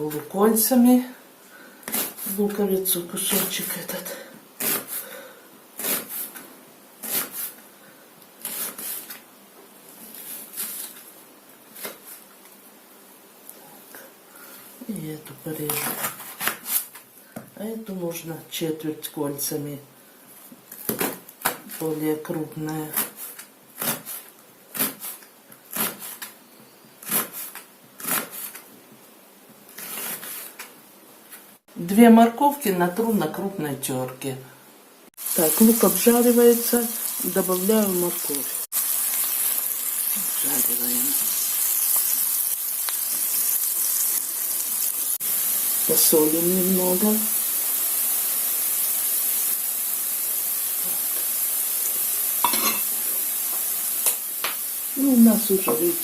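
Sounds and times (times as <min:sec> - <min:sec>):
knife slicing onion on board: 0:01.8 - 0:02.4, 0:04.6 - 0:05.0, 0:05.8 - 0:06.4, 0:07.0 - 0:07.6, 0:08.4 - 0:09.2, 0:22.9 - 0:26.3, 0:27.0 - 0:28.6, 0:29.7 - 0:30.7
knife cutting on a board: 0:04.6 - 0:05.0.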